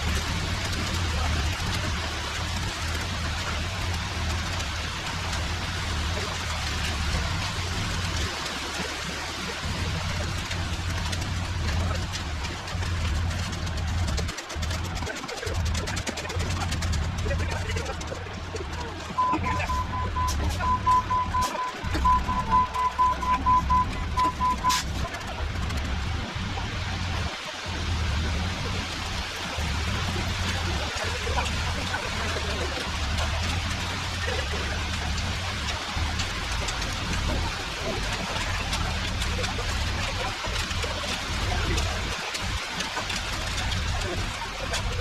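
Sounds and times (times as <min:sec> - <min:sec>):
low engine hum: 0:00.0 - 0:45.0
reverse alarm beeping: 0:19.2 - 0:25.0.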